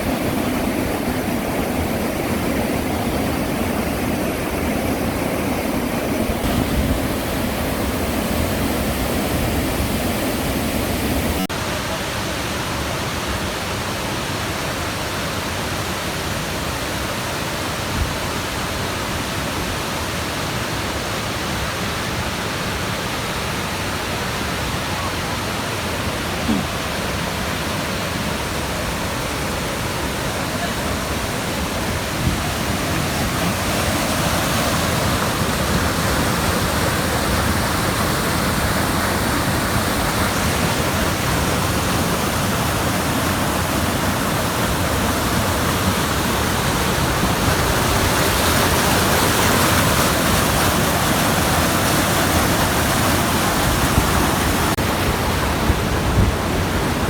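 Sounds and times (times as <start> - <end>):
waterfall pouring: 26.5 - 57.0.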